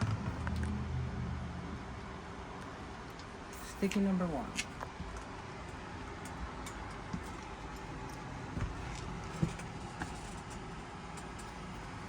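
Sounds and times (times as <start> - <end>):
low rumble: 0.0 - 3.5.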